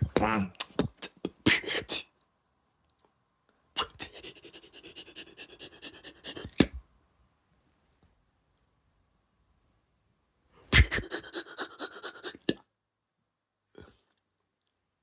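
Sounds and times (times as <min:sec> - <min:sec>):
person imitating sneezes: 0:00.0 - 0:02.1, 0:03.8 - 0:06.8, 0:10.7 - 0:12.6.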